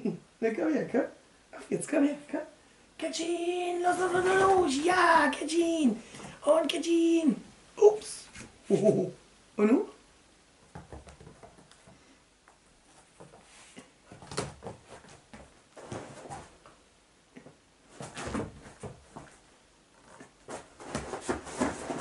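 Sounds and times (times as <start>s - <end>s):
rustling and clatter: 14.1s - 16.8s, 17.9s - 22.0s.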